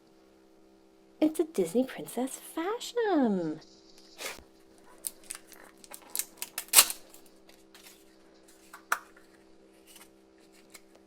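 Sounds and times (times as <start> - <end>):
faint steady hum: 0.0 - 11.0
plastic packaging clicking and crinkling: 4.8 - 11.0.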